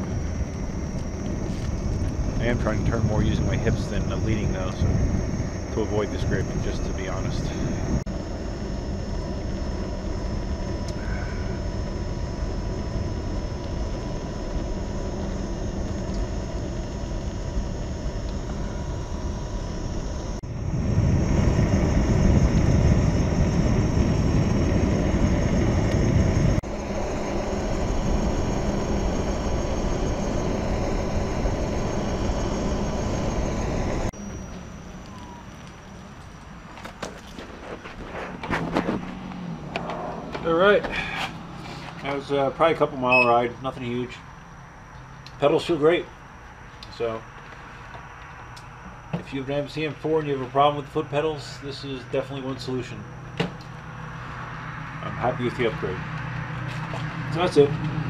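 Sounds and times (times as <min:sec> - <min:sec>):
wind and road rumble: 0:00.0 - 0:58.0
faint steady high tone: 0:26.8 - 0:36.4, 0:42.8 - 0:44.2.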